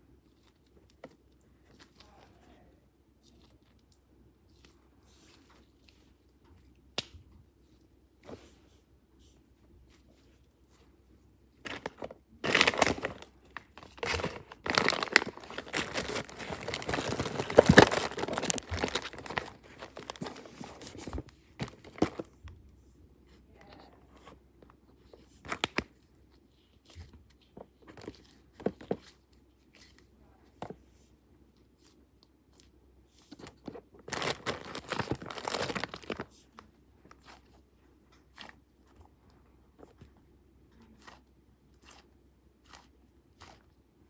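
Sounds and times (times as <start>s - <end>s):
hands crinkling crackly material: 11.6s - 22.4s, 23.2s - 31.0s, 31.6s - 39.0s.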